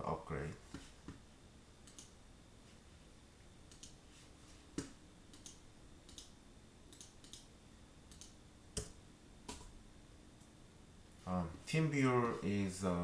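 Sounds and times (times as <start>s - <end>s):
computer mouse clicks: 1.8s - 2.2s, 3.7s - 4.0s, 4.8s - 6.3s, 6.9s - 7.5s, 8.1s - 9.7s.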